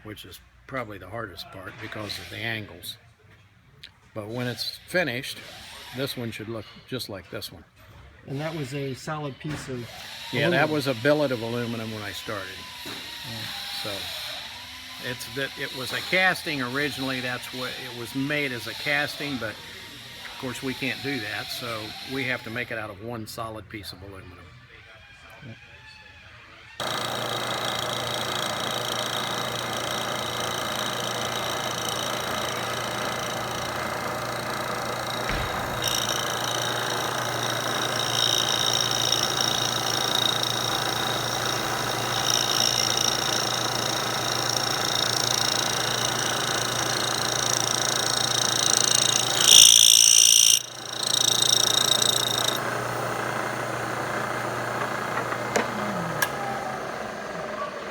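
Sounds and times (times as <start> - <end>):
cutter high whine: 9.9 - 22.6, 26.8 - 57.9
milling machine spindle running: 26.8 - 57.9.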